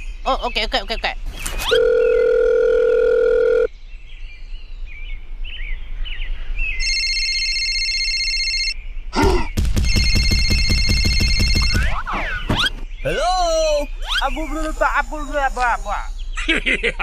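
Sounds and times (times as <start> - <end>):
electronic ringing tone: 1.6 - 3.7, 6.8 - 8.8, 9.8 - 12.1
bird-like chirping: 8.9 - 16.7.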